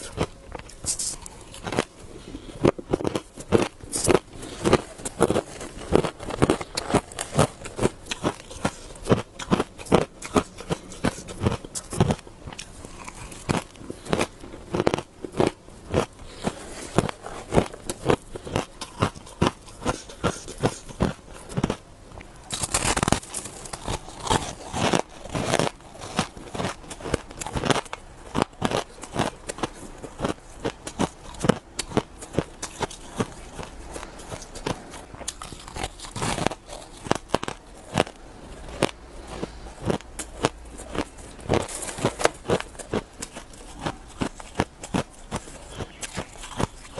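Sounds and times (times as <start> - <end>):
person chewing crunchy shaved ice: 0.0 - 46.9.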